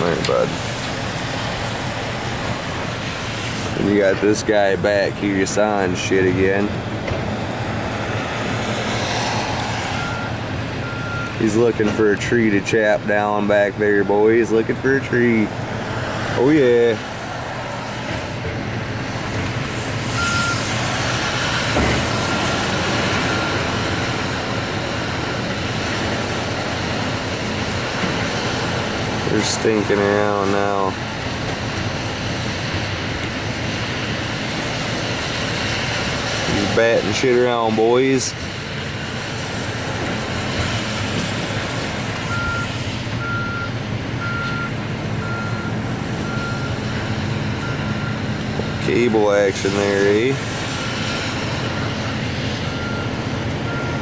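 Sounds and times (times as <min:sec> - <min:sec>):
heavy machinery diesel engine: 0:00.0 - 0:54.0
backup alarm beeps: 0:09.9 - 0:12.0, 0:20.2 - 0:20.6, 0:23.2 - 0:23.8, 0:42.3 - 0:46.8, 0:51.6 - 0:54.0.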